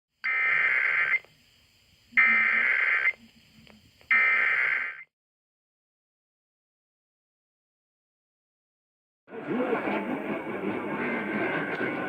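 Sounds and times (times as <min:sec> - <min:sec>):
buzzing digital data tones: 0:00.2 - 0:01.3, 0:02.1 - 0:03.3, 0:04.1 - 0:05.1.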